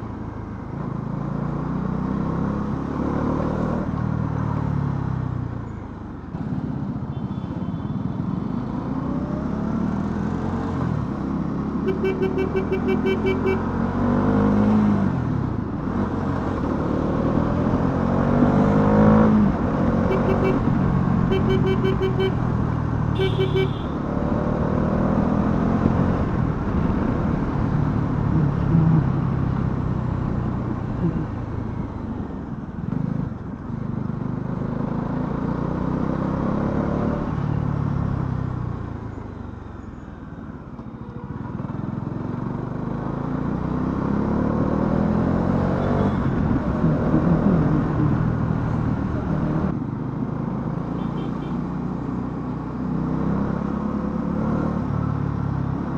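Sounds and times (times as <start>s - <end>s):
motorcycle engine revving: 8.5s - 30.0s
horn beeps: 11.8s - 13.8s, 20.0s - 24.0s.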